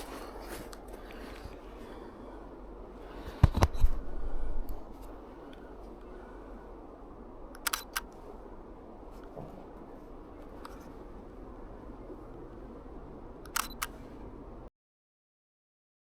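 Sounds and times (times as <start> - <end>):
camera handling knocks: 3.3 - 4.0
camera shutter clicks: 7.6 - 8.2, 13.5 - 14.0.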